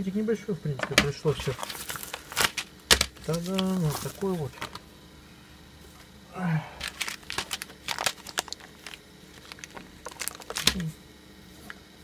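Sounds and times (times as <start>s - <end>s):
plastic packet crinkling: 1.3s - 4.8s, 6.8s - 11.0s.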